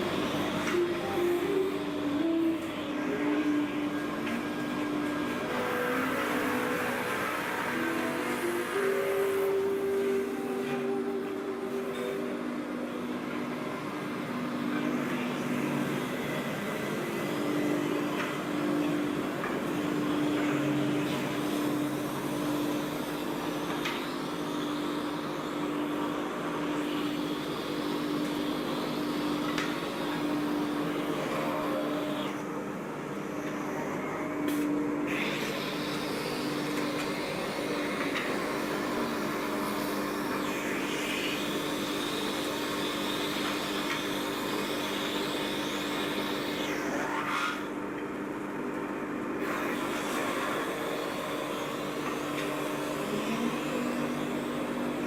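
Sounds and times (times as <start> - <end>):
lathe spindle humming: 0.0 - 55.0
hiss of wood cutting: 35.2 - 47.8.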